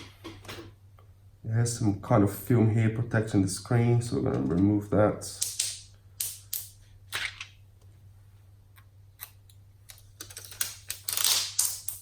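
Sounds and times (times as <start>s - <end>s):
plastic film peeling and crackling: 10.0s - 12.0s.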